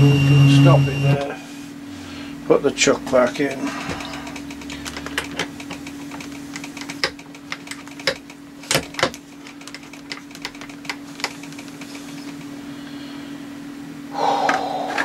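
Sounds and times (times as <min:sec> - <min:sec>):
machine hum: 0:00.0 - 0:15.0
metal clicks and knocks: 0:04.3 - 0:11.7.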